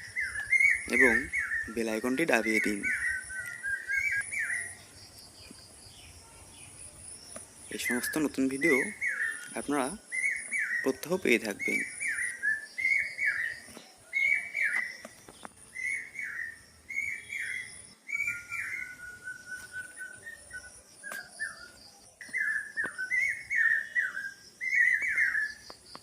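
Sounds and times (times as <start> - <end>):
high bird chirping: 0.0 - 26.0
bird whistling falling notes: 15.8 - 25.6.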